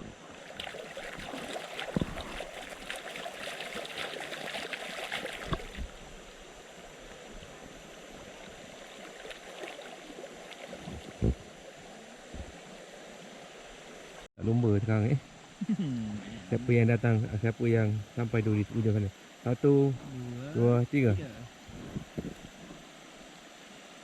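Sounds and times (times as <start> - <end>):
river water splashing: 0.0 - 14.3.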